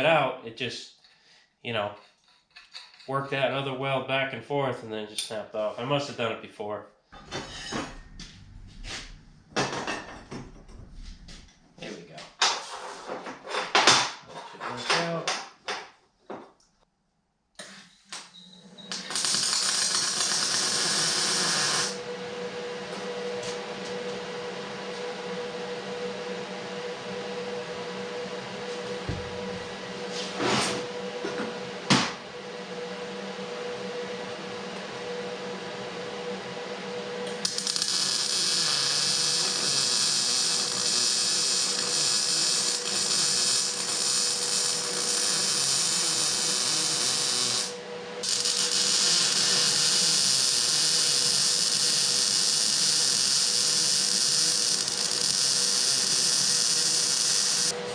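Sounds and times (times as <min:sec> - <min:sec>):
power tool grinding metal: 0:19.0 - 0:22.0, 0:37.3 - 0:57.8.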